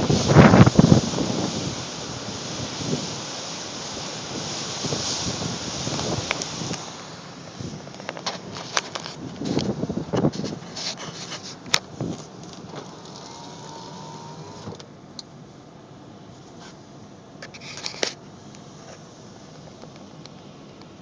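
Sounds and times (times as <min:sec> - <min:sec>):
storm wind and surf muffled: 0:00.0 - 0:14.8.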